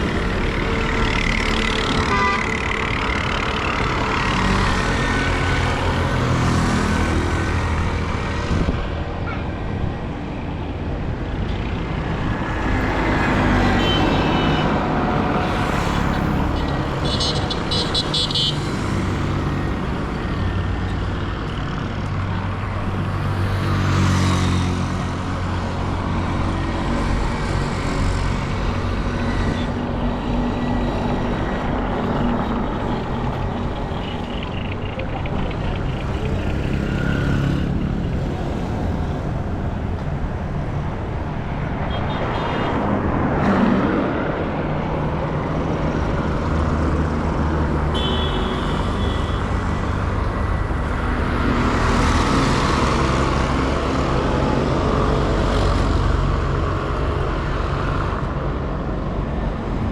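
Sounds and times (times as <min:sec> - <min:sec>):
vehicle engines running: 0:00.0 - 0:13.8, 0:14.6 - 0:41.9
vehicles passing close by: 0:00.0 - 0:59.9.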